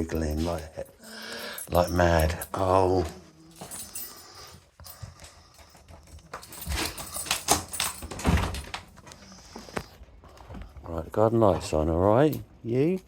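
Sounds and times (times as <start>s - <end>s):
keys and door lock clicking: 4.9s - 9.1s
door knocks and clatters: 6.6s - 8.9s.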